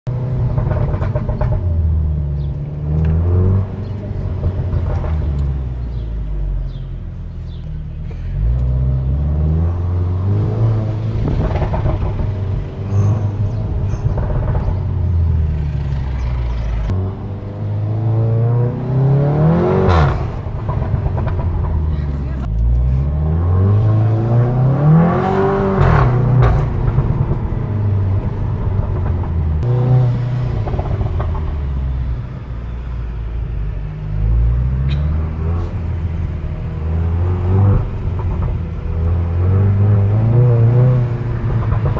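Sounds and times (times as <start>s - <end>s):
car engine revving: 0.1s - 41.9s.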